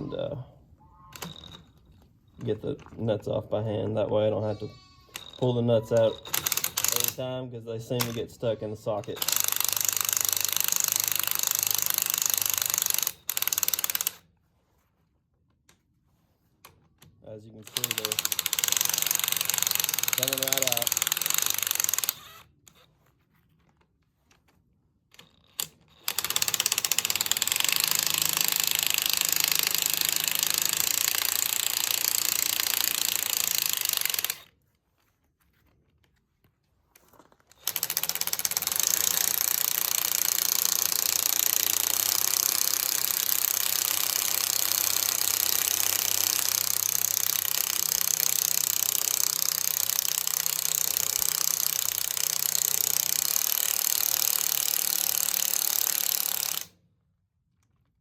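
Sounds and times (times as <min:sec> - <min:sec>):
power tool spinning nuts off: 0:05.1 - 0:07.2, 0:08.9 - 0:14.2, 0:17.6 - 0:22.8, 0:25.2 - 0:34.5, 0:37.5 - 0:56.8.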